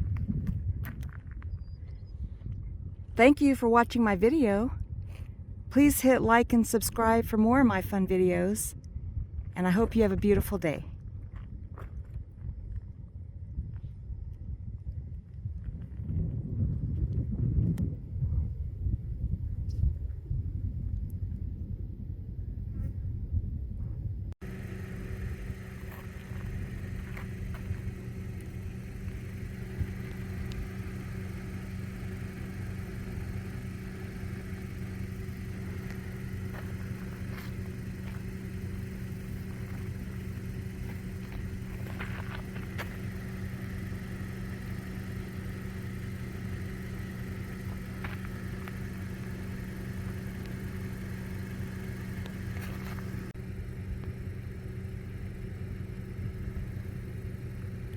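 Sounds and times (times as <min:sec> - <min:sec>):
car engine humming: 0:24.4 - 0:57.9.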